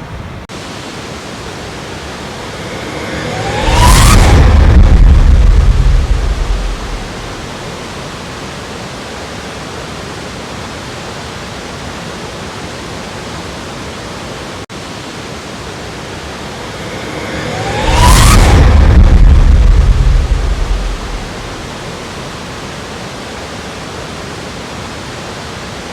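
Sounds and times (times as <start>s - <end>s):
waterfall rushing: 0.5s - 25.9s.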